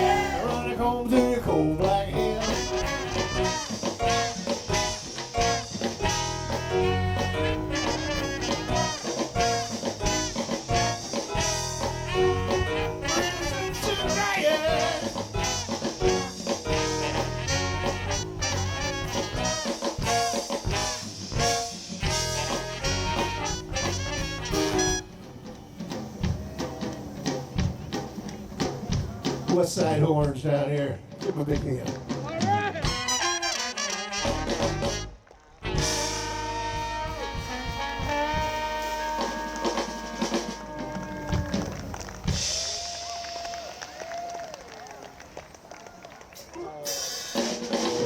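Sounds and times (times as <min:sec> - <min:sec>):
swing band playing: 0:00.0 - 0:48.0.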